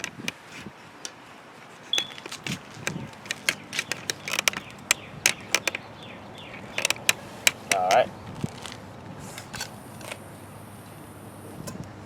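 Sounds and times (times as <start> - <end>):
small hard objects clicking: 2.0 - 5.9, 6.6 - 8.8.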